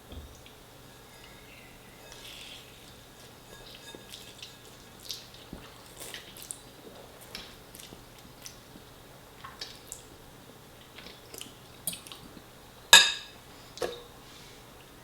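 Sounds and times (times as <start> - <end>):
wet chewing of spaghetti: 1.2 - 12.5.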